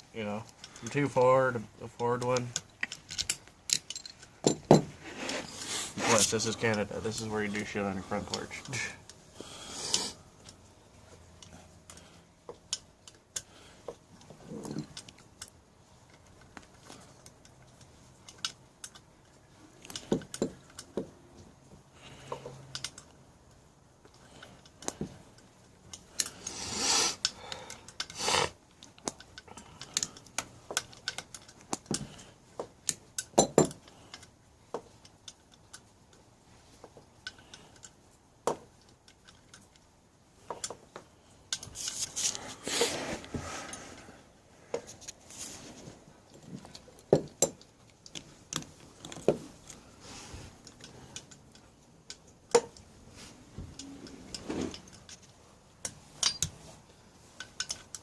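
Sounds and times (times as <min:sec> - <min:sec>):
hand tools and metal parts clinking: 0:00.2 - 0:09.2, 0:09.8 - 0:23.2, 0:24.0 - 0:44.1, 0:44.7 - 0:58.0
metal parts clattering: 0:02.8 - 0:06.8.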